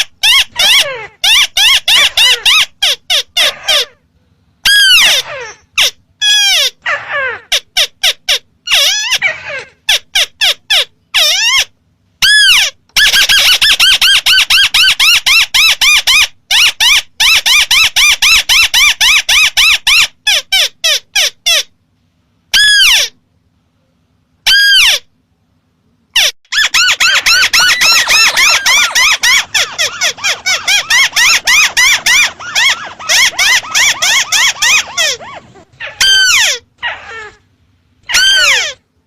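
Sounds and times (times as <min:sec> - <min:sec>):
bird whistled calls: 0:26.6 - 0:35.2.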